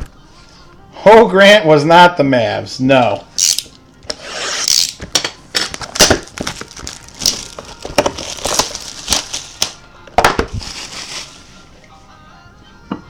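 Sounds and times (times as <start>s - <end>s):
cards sliding and rustling: 4.1s - 9.8s.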